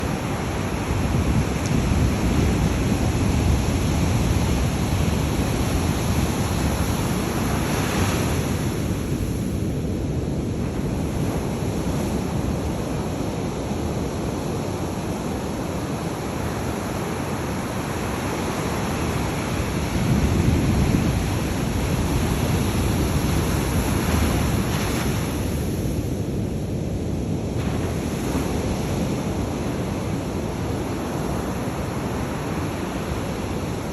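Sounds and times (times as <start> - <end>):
ocean surf breaking: 0.0 - 9.7
wind buffeting microphone: 0.0 - 33.9.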